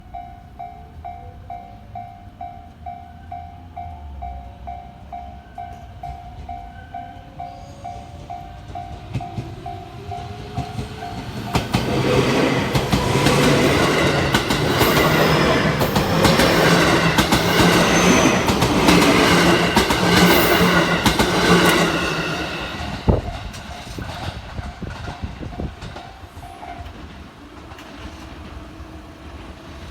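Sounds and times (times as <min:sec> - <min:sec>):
level crossing warning bell: 0:00.0 - 0:23.1
train passing with motor hum: 0:00.0 - 0:29.9
wheels clattering over rail joints: 0:08.2 - 0:28.7.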